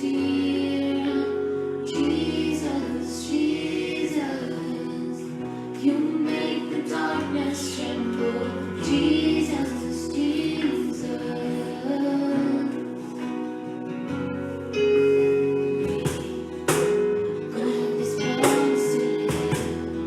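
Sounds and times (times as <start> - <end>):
band accompaniment: 13.8 - 20.0.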